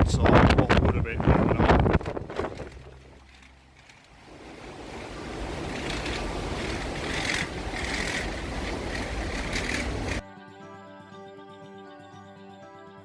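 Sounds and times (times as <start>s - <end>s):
gale-force wind buffeting microphone: 0.0s - 10.2s
sea surging: 1.3s - 10.2s.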